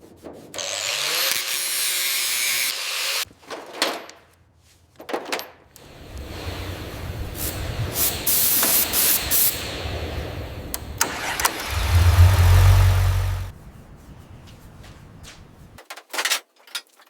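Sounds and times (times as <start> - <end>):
spraying hiss: 5.9 - 14.3
loud low motor hum: 10.4 - 13.6.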